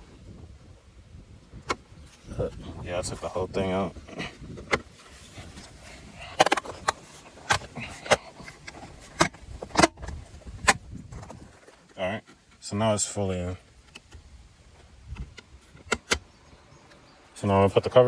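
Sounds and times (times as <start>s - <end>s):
plastic clicks and knocks: 6.3s - 11.4s, 15.1s - 16.3s.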